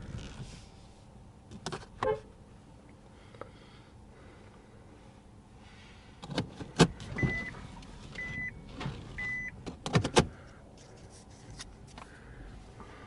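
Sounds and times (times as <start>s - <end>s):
car warning chime beeps: 7.1s - 7.6s, 8.2s - 9.6s.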